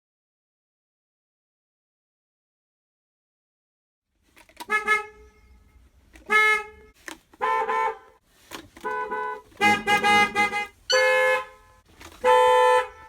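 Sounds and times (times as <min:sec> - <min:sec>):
bus horn short honks: 0:08.9 - 0:13.0.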